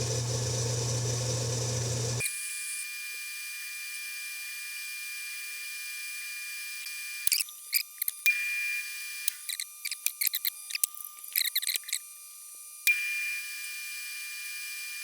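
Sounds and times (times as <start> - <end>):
machine tool motor whining: 0.0 - 2.2.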